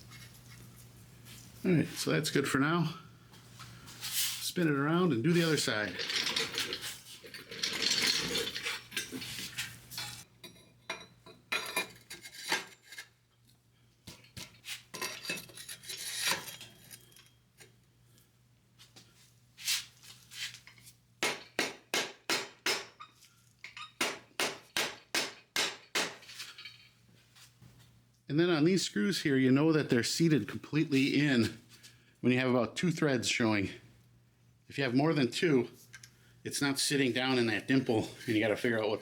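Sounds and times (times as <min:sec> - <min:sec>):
steel tools clinking: 0:05.4 - 0:12.8, 0:14.9 - 0:17.4, 0:23.0 - 0:24.0, 0:26.3 - 0:27.0.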